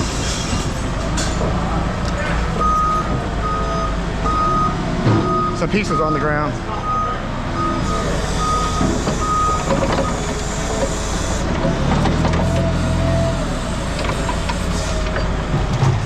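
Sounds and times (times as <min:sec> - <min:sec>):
diesel engine running: 0:00.0 - 0:16.0
truck reversing beeper: 0:02.4 - 0:11.5.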